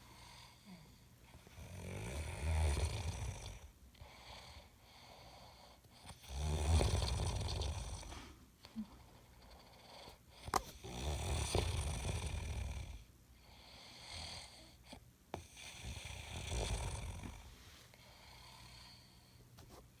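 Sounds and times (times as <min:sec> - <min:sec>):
man snoring: 0:01.5 - 0:04.6, 0:05.2 - 0:08.2, 0:10.8 - 0:13.0, 0:15.4 - 0:17.5.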